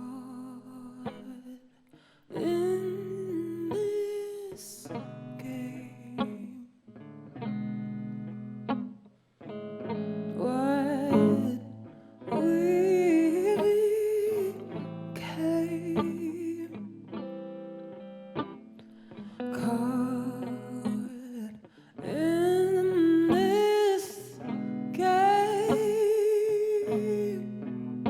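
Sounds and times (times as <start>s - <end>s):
woman singing wordless melody: 0.0s - 6.8s, 10.3s - 17.1s, 19.5s - 27.6s
plucked guitar chords: 2.4s - 28.0s.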